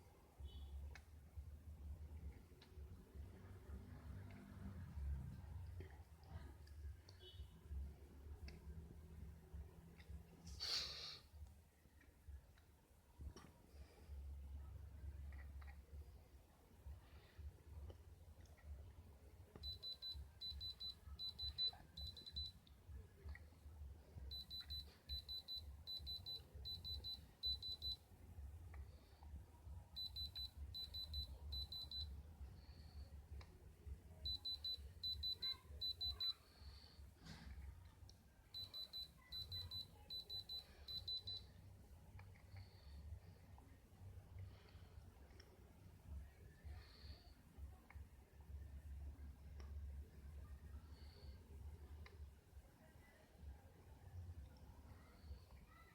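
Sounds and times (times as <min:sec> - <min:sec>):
faint low hum: 0:00.0 - 0:55.9
electronic alarm beeping: 0:19.6 - 0:22.6, 0:24.3 - 0:28.0, 0:30.0 - 0:32.2, 0:34.2 - 0:36.4, 0:38.6 - 0:41.5.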